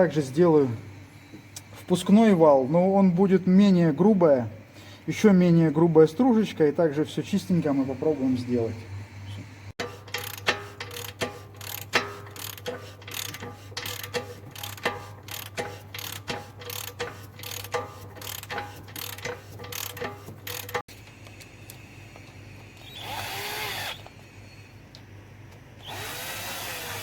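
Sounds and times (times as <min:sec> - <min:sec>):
steady low hum: 0:00.0 - 0:25.8
hand tool metallic clicking: 0:09.8 - 0:20.8.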